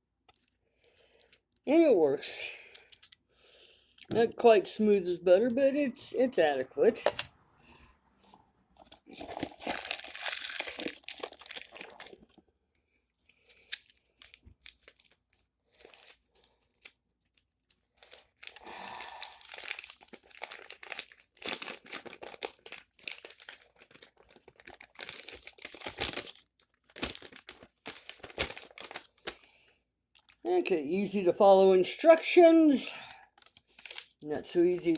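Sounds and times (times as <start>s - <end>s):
paper rustling and crinkling: 8.8s - 12.3s, 13.5s - 29.5s, 33.2s - 34.9s.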